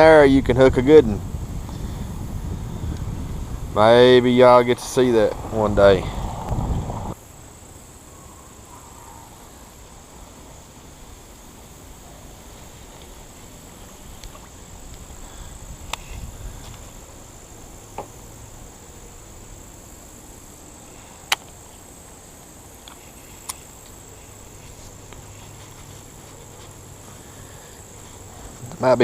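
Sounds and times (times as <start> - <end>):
low rumble: 0.0 - 7.2.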